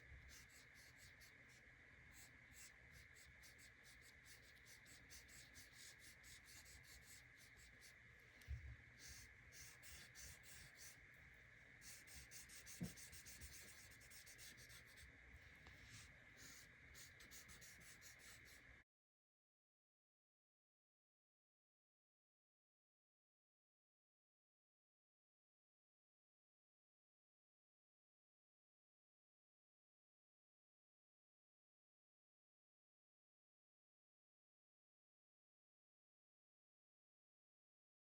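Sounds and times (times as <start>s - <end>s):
steady high hum: 0.0s - 18.8s
pencil scratching on paper: 0.2s - 8.0s, 9.0s - 11.1s, 11.8s - 15.1s, 15.7s - 18.6s.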